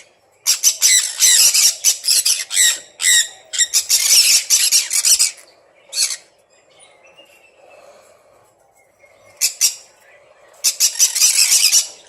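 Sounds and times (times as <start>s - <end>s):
faint chirps: 0.0s - 12.0s
parrots squawking: 0.4s - 6.2s, 9.4s - 9.9s, 10.6s - 12.0s.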